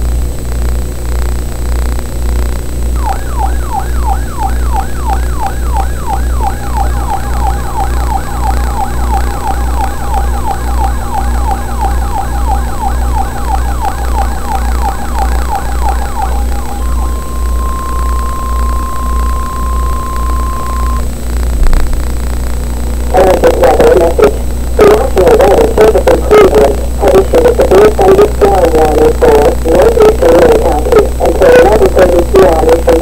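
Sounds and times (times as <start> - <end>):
low mains hum: 0.0 - 33.0
steady high alert tone: 3.0 - 21.0
falling siren sweeps: 3.0 - 21.1.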